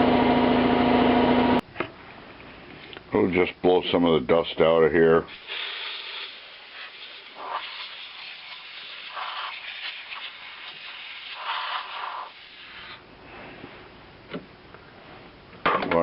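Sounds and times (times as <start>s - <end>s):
compressed air hissing: 5.3s - 13.6s.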